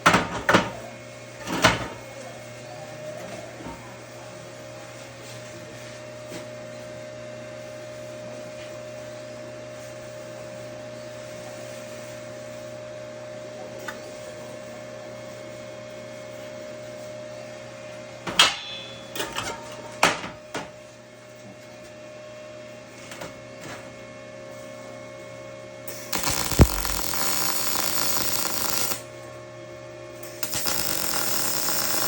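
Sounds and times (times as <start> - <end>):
machine hum: 25.9 - 29.0.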